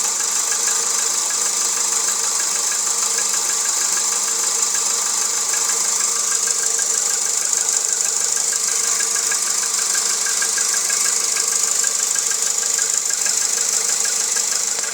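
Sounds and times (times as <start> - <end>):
engine knock ticking: 0.0 - 14.9
car engine running: 0.1 - 14.9.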